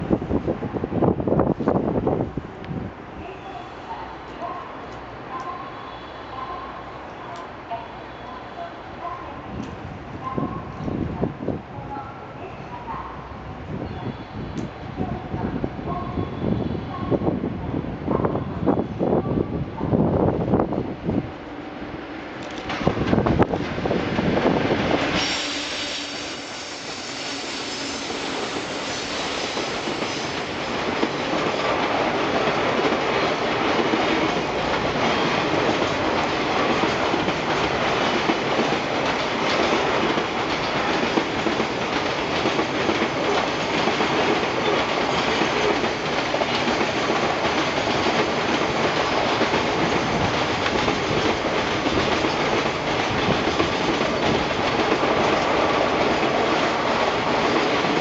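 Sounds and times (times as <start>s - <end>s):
train wheels clattering on rails: 24.8s - 58.0s.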